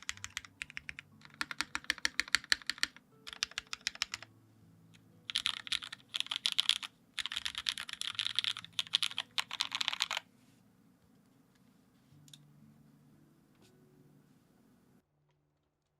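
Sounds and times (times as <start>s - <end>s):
fast typing on mechanical keyboard: 0.0s - 4.3s, 5.3s - 10.2s
faint low background tone: 0.0s - 15.9s.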